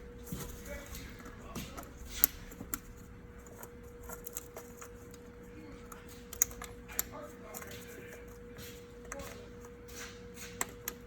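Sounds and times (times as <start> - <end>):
faint steady hum: 0.0 - 11.0
clicks of handling connectors: 0.9 - 11.0.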